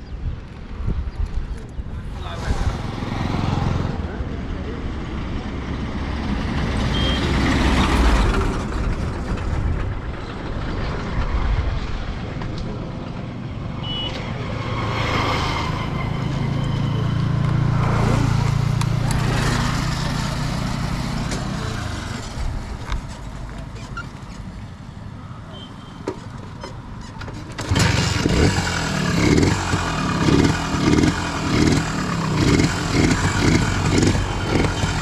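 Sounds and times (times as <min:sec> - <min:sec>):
motorcycle engine running: 0:02.0 - 0:05.3, 0:27.6 - 0:35.0
short high beeps: 0:06.9 - 0:07.3.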